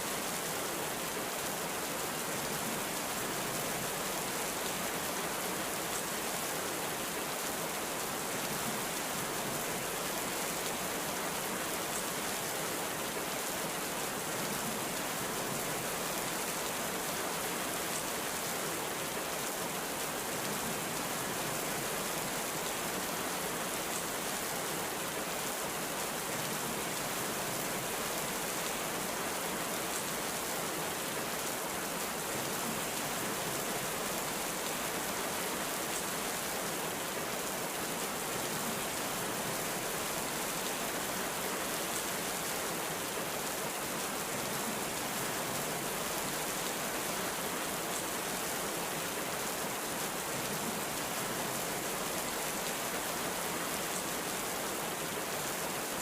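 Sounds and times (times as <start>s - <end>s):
heavy rain on surfaces: 0.0s - 56.0s.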